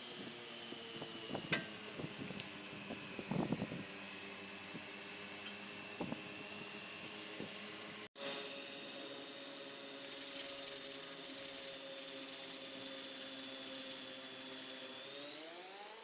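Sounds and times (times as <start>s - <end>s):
motor whine: 0.0s - 16.0s
harsh sanding scrape: 10.1s - 14.9s.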